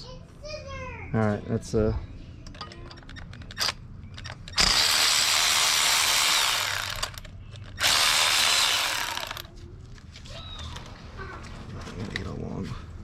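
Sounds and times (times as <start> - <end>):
power tool whining: 3.6 - 9.5.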